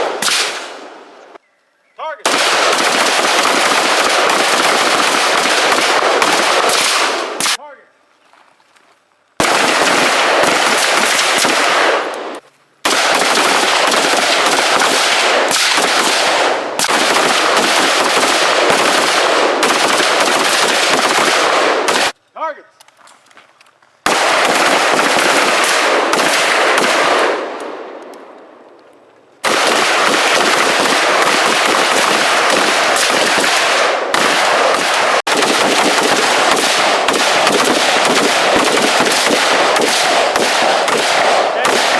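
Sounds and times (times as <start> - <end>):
rapid gunfire: 2.2 - 7.6, 9.4 - 12.1, 12.8 - 22.2, 24.1 - 27.5, 29.4 - 41.9.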